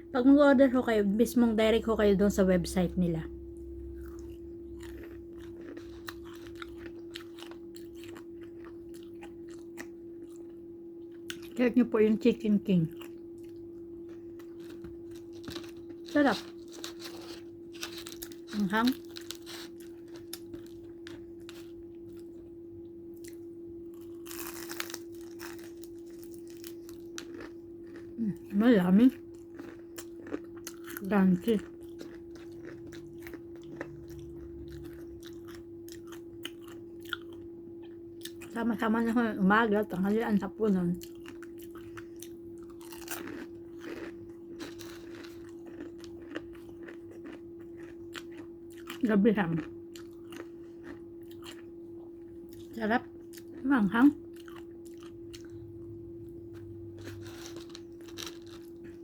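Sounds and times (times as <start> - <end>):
steady low hum: 0.0 - 59.0
chewing crispy fried chicken: 3.6 - 11.7, 12.7 - 39.0, 40.7 - 59.0.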